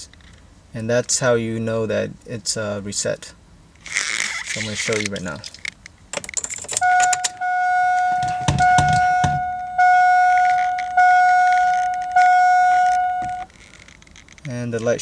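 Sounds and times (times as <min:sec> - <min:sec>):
clicks: 0:04.4 - 0:14.5
dull thumps: 0:06.1 - 0:13.5
car warning chime: 0:06.8 - 0:13.5.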